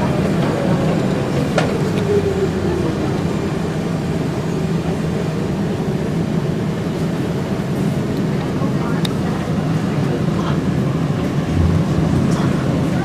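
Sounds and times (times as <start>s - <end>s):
streetcar motor whine: 0.0s - 13.0s
low rumble: 11.3s - 13.0s.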